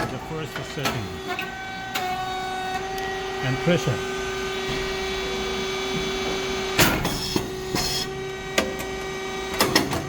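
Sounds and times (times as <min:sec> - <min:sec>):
popping machine humming: 0:00.0 - 0:10.0.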